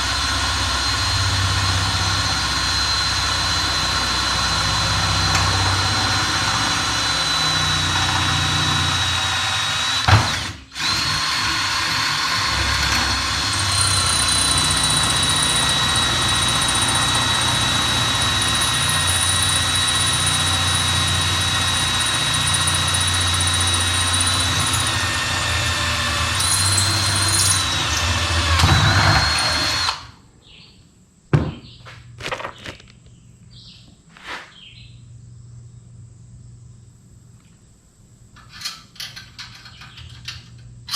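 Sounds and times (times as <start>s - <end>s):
power tool whining: 0.0s - 30.2s.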